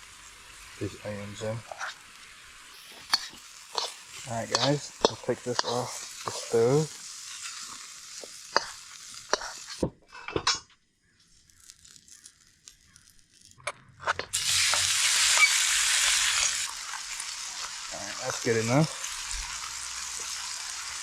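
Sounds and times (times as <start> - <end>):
stir fry sizzling in a pan: 0.0 - 9.9, 11.3 - 21.0
utensil clacking against pan: 3.1 - 6.7.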